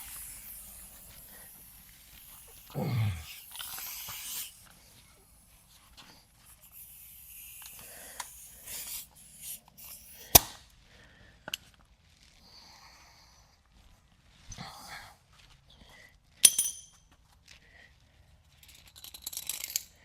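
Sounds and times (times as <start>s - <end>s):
rustles and small clicks: 18.4s - 20.0s.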